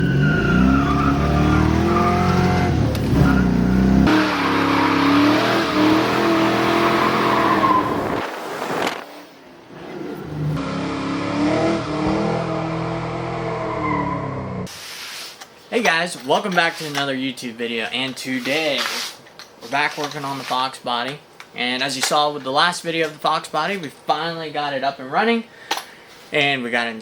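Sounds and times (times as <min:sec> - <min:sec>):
car engine revving: 0:00.0 - 0:08.9, 0:09.7 - 0:14.7.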